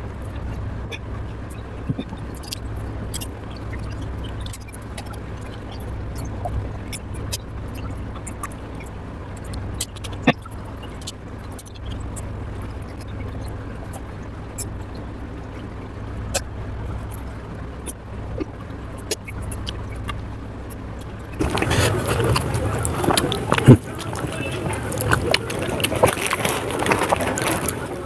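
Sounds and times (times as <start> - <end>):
steady low hum: 0.0 - 28.0
wet mouth clicks while chewing: 0.9 - 14.8, 16.3 - 24.3.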